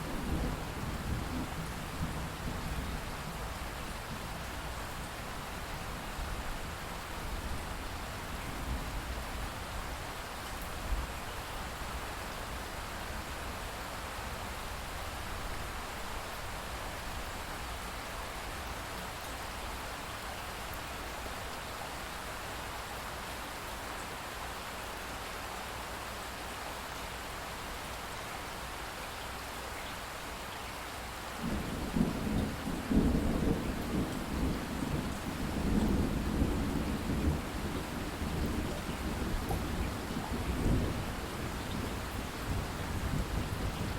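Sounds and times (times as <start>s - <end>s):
heavy rain falling: 0.0s - 43.9s
rolling thunder rumble: 31.4s - 43.9s.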